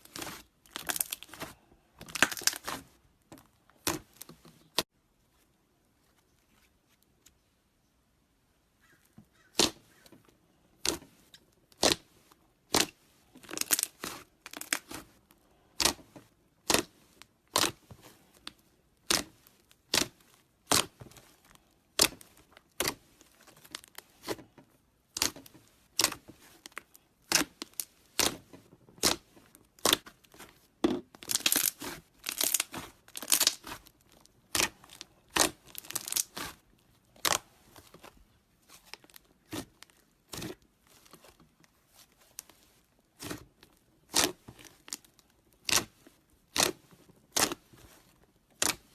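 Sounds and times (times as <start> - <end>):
slime popping and crackling: 0.0 - 2.8, 12.7 - 15.1, 16.6 - 17.8, 19.0 - 21.0, 21.9 - 24.4, 25.1 - 25.4, 26.0 - 38.1, 43.2 - 47.7, 48.6 - 48.9.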